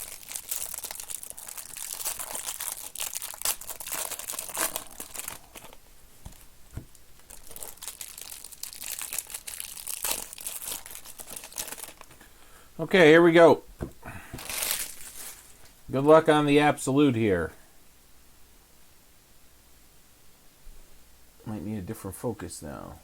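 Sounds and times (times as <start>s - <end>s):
plastic wrappers crinkling and tearing: 0.0s - 12.2s, 14.4s - 15.7s.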